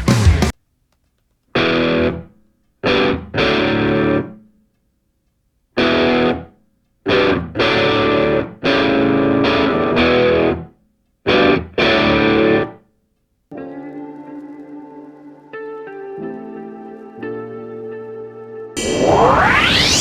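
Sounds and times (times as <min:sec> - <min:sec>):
distorted electric guitar power chords: 0:00.0 - 0:00.5, 0:07.2 - 0:10.6, 0:18.8 - 0:20.0.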